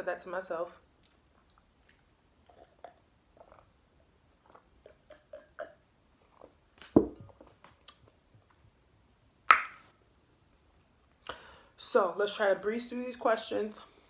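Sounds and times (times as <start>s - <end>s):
chewing and mouth noises: 1.0s - 3.7s, 4.4s - 6.6s
dull thump: 7.0s - 7.2s.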